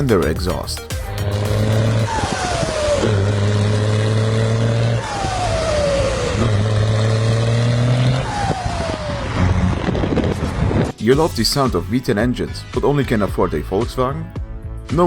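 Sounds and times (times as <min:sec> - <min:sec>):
car exhaust drone: 0:00.8 - 0:11.0.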